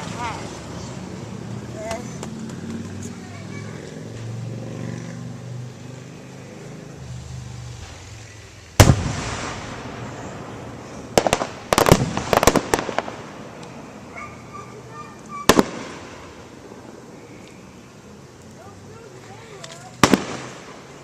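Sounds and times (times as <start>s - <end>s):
fireworks sharp cracks: 7.0s - 17.1s, 19.6s - 21.0s
fireworks bangs with rolling echo: 8.8s - 13.6s, 15.3s - 17.0s, 20.0s - 21.0s.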